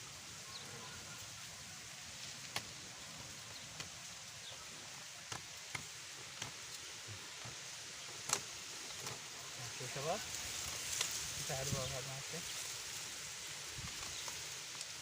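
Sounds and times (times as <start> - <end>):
steady background hiss: 0.0 - 15.0.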